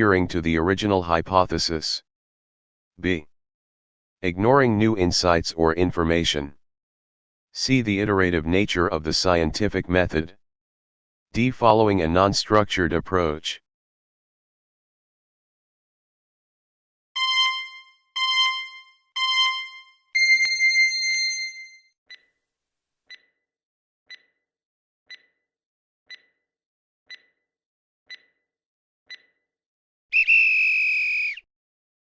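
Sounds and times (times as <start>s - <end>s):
loud electronic alarm tone: 17.2s - 21.8s
electronic timer beeps: 17.2s - 22.2s, 23.1s - 23.4s, 24.1s - 24.4s, 25.1s - 25.4s, 26.1s - 26.4s, 27.1s - 27.4s, 28.1s - 28.4s, 29.1s - 29.4s
faint timer ticks: 22.1s - 22.3s, 23.1s - 23.4s, 24.1s - 24.4s, 25.1s - 25.4s, 26.1s - 26.5s, 27.1s - 27.5s, 28.1s - 28.4s, 29.1s - 29.4s.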